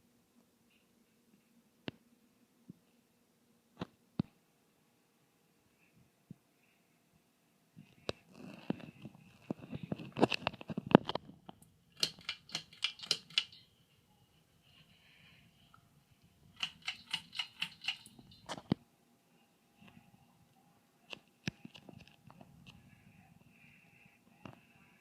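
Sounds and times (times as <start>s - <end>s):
rapid clicking and rattling: 12.0s - 13.6s, 16.6s - 18.6s.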